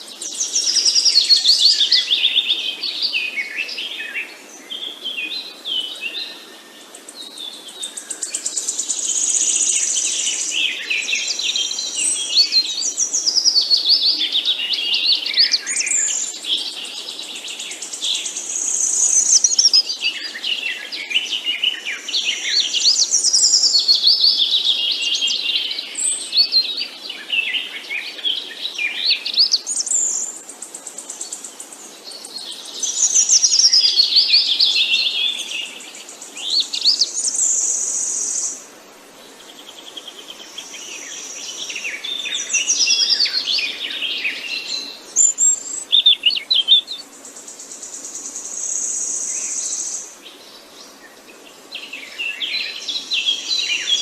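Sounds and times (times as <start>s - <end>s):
songbirds chirping and singing: 0.0s - 54.0s.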